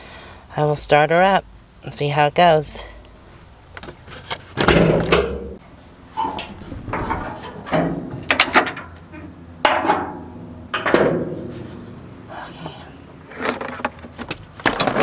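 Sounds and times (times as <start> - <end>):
tools knocking and clunking: 4.6 - 5.6, 6.2 - 11.7.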